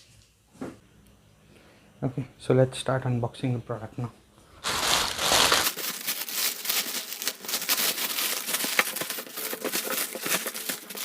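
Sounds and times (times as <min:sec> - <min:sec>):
packaging crinkling: 0:04.6 - 0:11.0.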